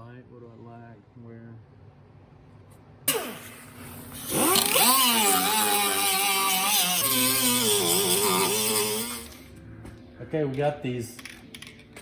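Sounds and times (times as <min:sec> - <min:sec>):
power grinder grinding steel: 0:04.2 - 0:09.5.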